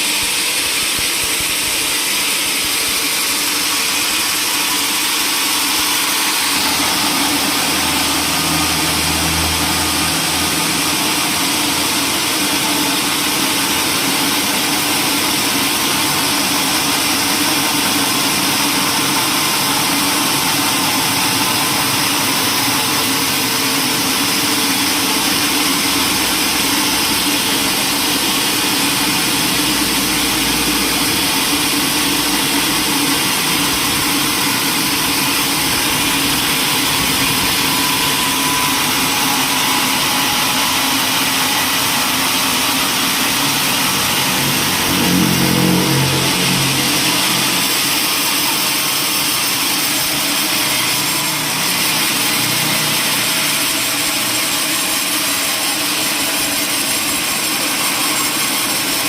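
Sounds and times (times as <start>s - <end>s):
sawmill machinery running: 0.0s - 59.0s
deep hum: 6.4s - 14.6s, 15.8s - 49.6s.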